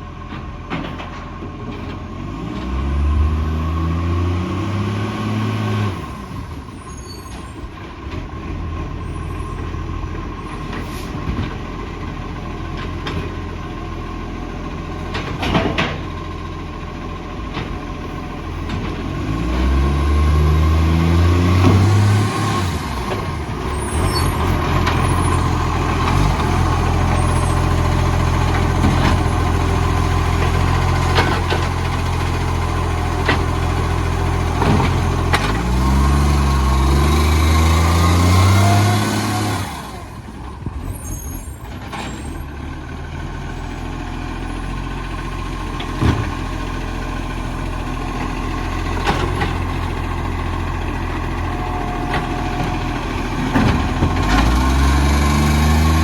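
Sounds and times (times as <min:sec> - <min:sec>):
diesel engine revving: 0:01.8 - 0:56.0.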